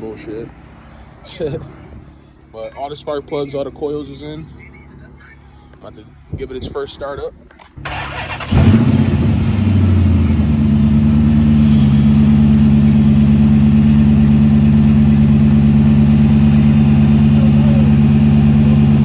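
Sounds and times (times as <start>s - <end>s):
car engine starting and idling: 7.8s - 19.0s.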